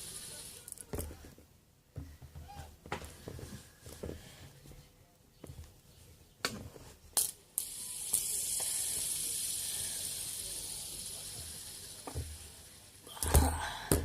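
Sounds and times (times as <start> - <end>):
fidget spinner whirring: 0.0 - 0.9, 7.2 - 13.2
fidget spinner clicks: 7.2 - 12.9.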